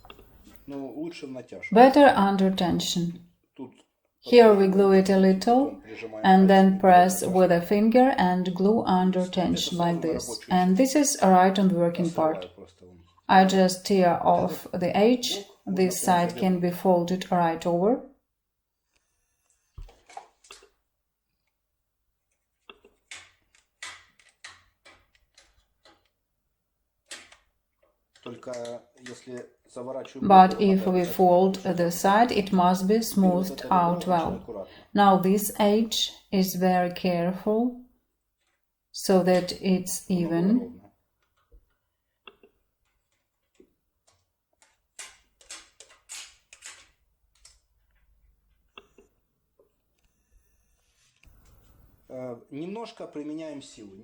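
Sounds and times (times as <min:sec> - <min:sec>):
small clicks and scraping rubs: 0:03.5 - 0:04.2, 0:18.8 - 0:21.6, 0:22.3 - 0:26.2, 0:27.0 - 0:29.8, 0:38.4 - 0:38.7, 0:41.2 - 0:51.9.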